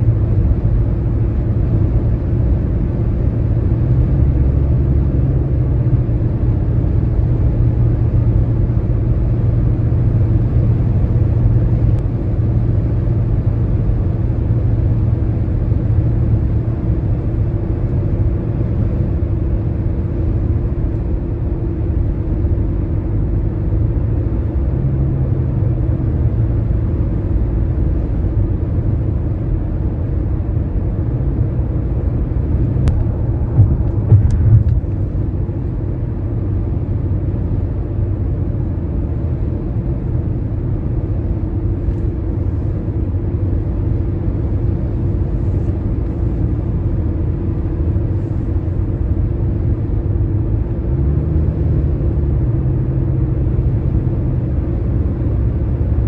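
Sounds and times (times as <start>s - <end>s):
tyre and road noise rumble: 0.0s - 56.0s
steady hum: 30.2s - 37.4s
brief thumps: 32.8s - 35.0s.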